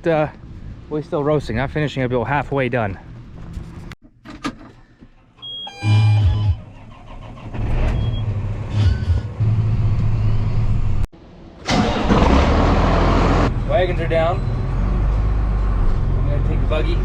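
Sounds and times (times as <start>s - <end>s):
tractor engine rumbling: 4.8s - 17.0s
brief high tone: 5.6s - 6.6s.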